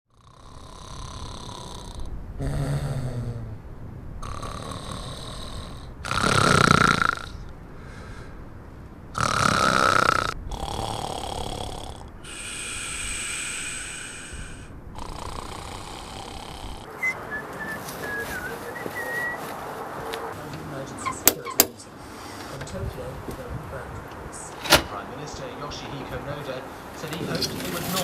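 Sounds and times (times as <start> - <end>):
person snoring loudly: 0.1 - 3.6, 4.2 - 7.4, 9.2 - 16.9.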